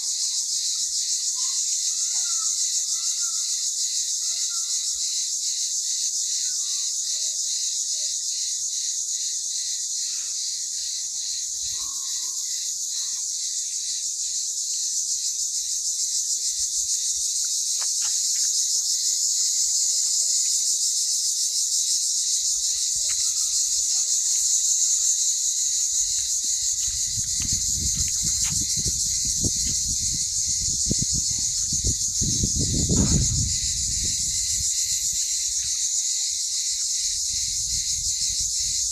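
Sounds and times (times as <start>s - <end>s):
high-pitched insect chorus trilling: 0.0s - 38.9s
faint bird chirps: 11.6s - 13.3s
low rumbling microphone noise: 27.0s - 34.3s.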